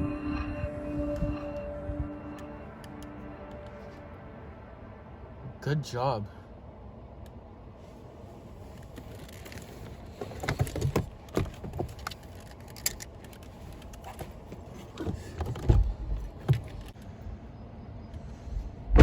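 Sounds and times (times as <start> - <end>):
heavy low thumps: 18.7 - 19.0.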